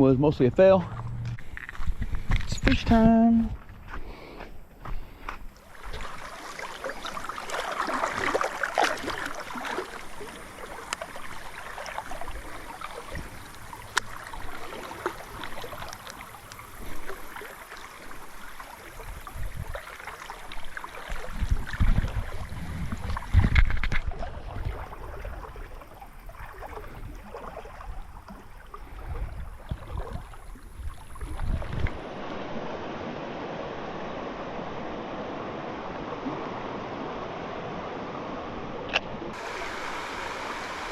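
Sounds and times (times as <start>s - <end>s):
low rumbling bumps: 0.0s - 4.0s
river water rushing: 5.6s - 22.6s, 32.0s - 40.9s.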